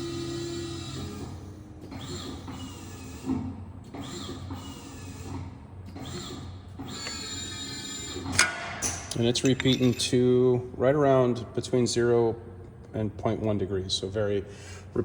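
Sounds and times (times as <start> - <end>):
press brake motor whining: 0.0 - 8.4.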